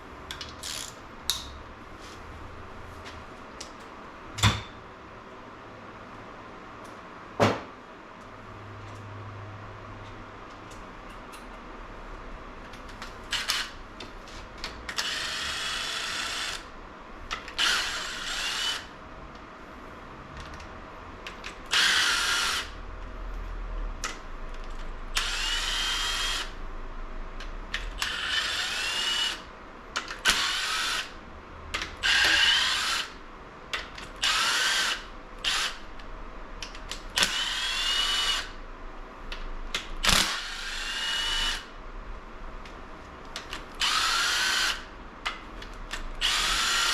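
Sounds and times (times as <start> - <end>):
power drill whining: 17.6 - 18.9, 21.7 - 22.7, 25.2 - 26.6, 28.0 - 29.4, 30.2 - 31.1, 32.0 - 33.2, 34.2 - 35.8, 37.2 - 38.5, 40.0 - 41.7, 43.8 - 44.9, 46.2 - 46.9.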